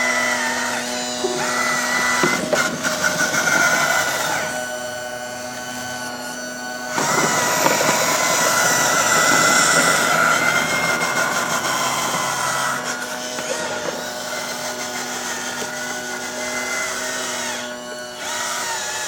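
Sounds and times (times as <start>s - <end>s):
model machinery motor whine: 0.0s - 19.0s.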